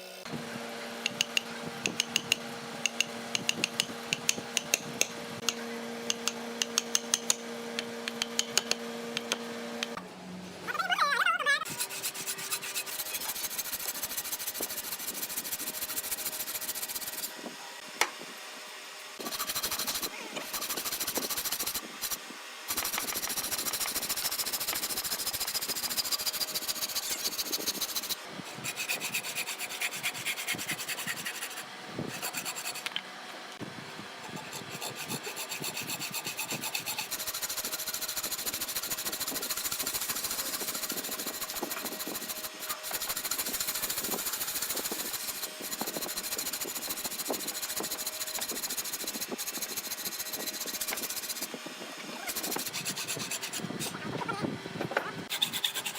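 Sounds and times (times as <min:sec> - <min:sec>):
tool rasping on hardwood: 0:11.6 - 0:17.4, 0:19.2 - 0:32.9, 0:34.2 - 0:51.6, 0:52.3 - 0:54.0, 0:55.3 - 0:55.9.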